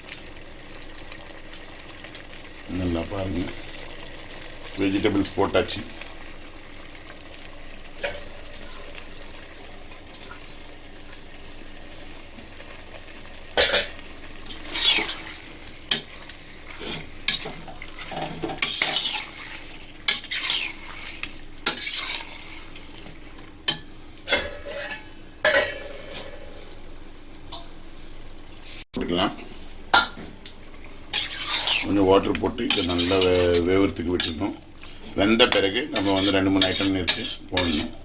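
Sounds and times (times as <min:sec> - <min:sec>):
food sizzling: 0:00.0 - 0:38.0
spoon scraping metal pot: 0:14.6 - 0:15.3, 0:16.8 - 0:22.6, 0:24.3 - 0:25.1, 0:31.1 - 0:32.0, 0:32.6 - 0:34.4, 0:35.5 - 0:38.0.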